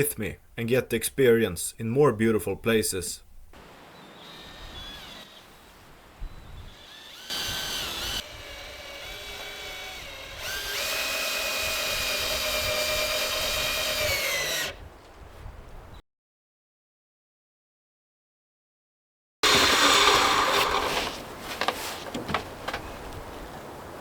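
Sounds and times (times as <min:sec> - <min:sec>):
power drill whining: 0:04.2 - 0:05.4, 0:06.7 - 0:14.8, 0:19.4 - 0:21.2.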